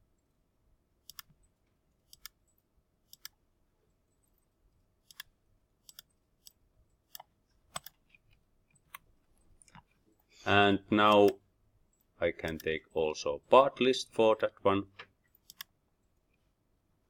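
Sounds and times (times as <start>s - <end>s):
computer mouse clicks: 1.0s - 1.4s, 2.0s - 3.4s, 5.0s - 10.0s, 12.0s - 12.7s, 15.0s - 16.4s.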